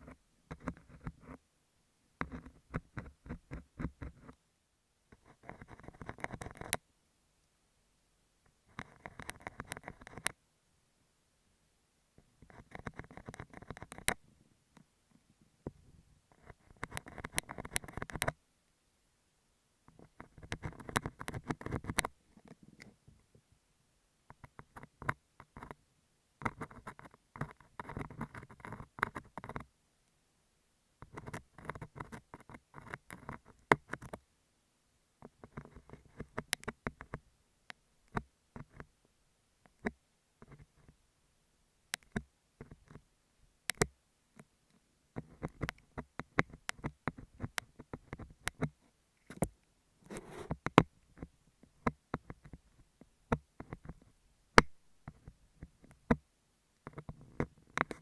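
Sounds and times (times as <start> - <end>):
ear pick scratching on wax: 50.0 - 50.8.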